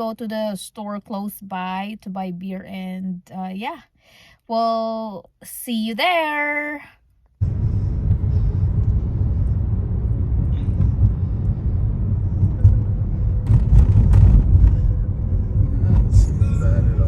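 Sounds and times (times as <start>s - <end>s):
car tyres and engine rumbling: 7.4s - 17.0s.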